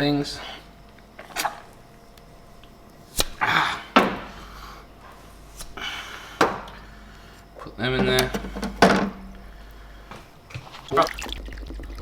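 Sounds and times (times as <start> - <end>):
hand tools clicking and knocking: 7.6 - 9.5.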